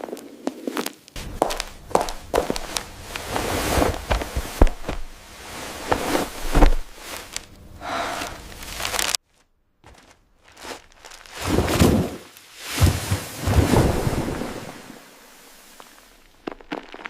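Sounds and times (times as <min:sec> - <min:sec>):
food crunching and crackling: 0:00.0 - 0:07.6, 0:08.2 - 0:09.2, 0:09.9 - 0:11.6, 0:15.8 - 0:17.0.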